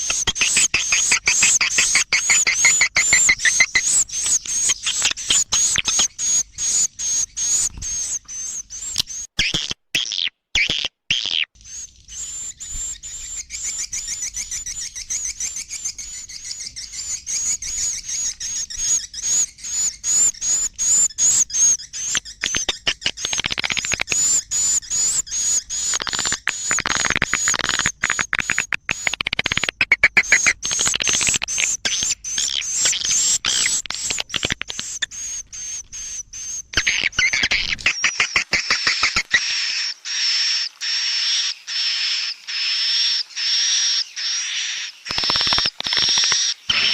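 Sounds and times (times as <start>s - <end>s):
swiftlets twittering: 0.0s - 9.3s, 11.8s - 46.9s
rapid clicks: 45.1s - 46.9s.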